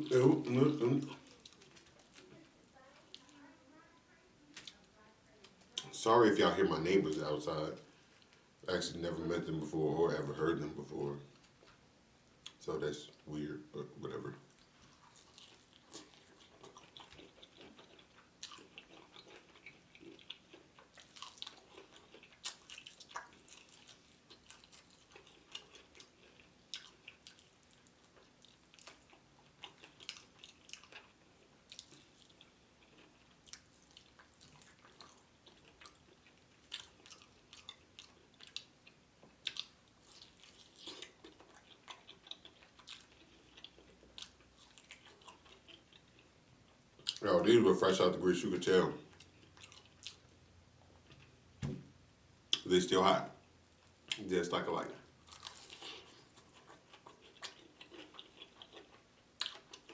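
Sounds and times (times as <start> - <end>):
crunchy chewing: 0.5 - 3.5, 14.4 - 47.3, 49.0 - 51.4, 55.0 - 59.9.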